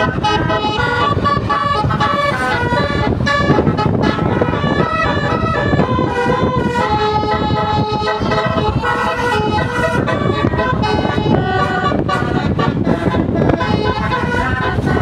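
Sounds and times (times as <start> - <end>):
musical bus horn tune: 0.0 - 15.0.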